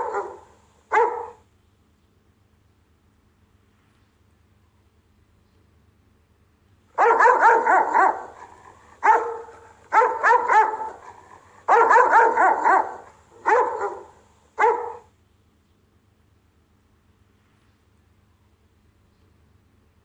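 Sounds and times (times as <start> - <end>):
dog barking: 0.0 - 1.4, 7.0 - 15.1.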